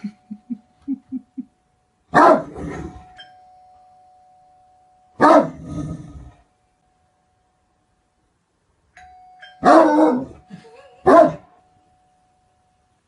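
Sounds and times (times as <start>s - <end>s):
dog barking: 2.1s - 2.5s, 5.2s - 5.6s, 9.6s - 10.3s, 11.0s - 11.5s
steady ringing tone: 3.0s - 13.0s.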